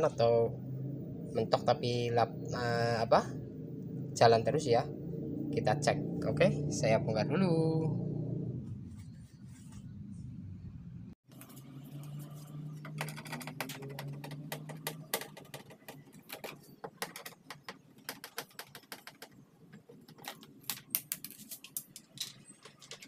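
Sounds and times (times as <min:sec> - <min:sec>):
low hum: 0:00.0 - 0:14.6
tools and parts clicking: 0:12.8 - 0:23.0.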